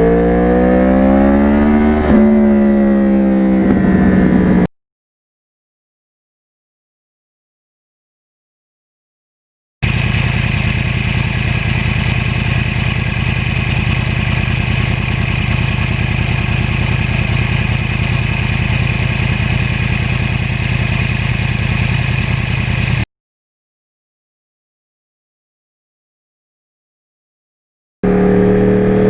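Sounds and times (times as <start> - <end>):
motorcycle engine running: 0.0 - 4.7, 9.8 - 23.0, 28.0 - 29.0.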